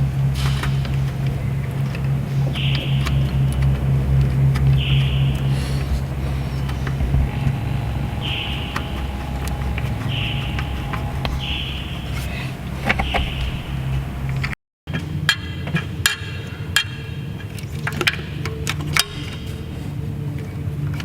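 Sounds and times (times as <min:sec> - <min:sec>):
steady low hum: 0:00.0 - 0:14.6.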